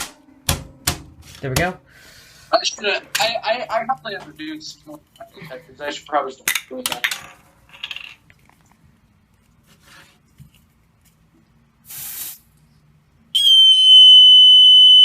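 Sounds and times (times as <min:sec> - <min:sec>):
aerosol spray hiss: 0:11.9 - 0:12.5
smoke alarm high-pitched tone: 0:13.4 - 0:15.0.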